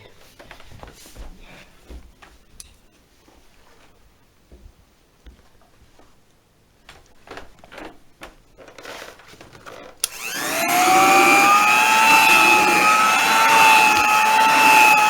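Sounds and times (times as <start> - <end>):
hand vacuum motor whine: 10.0 - 15.0.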